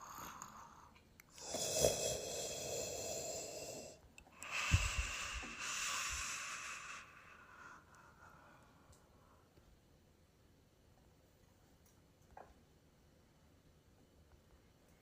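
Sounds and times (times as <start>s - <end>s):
wheezy breathing: 0.0s - 8.9s.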